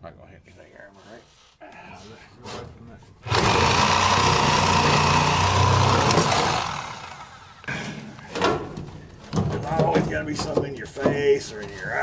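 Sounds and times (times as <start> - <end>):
reciprocating saw cutting plastic pipe: 3.2 - 7.4.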